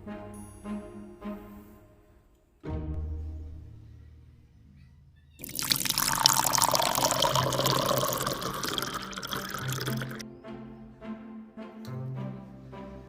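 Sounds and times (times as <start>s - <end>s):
water pouring into a pot: 5.4s - 10.2s.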